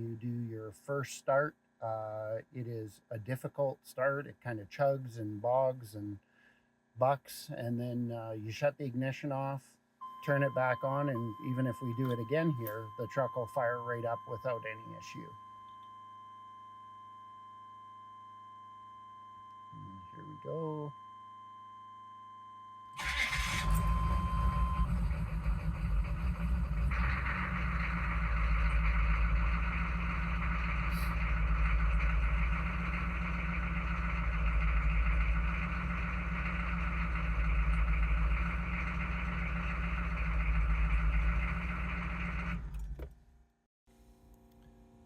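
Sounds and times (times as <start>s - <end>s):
steady high tone: 10.0s - 21.0s
diesel engine starting and idling: 23.0s - 43.3s.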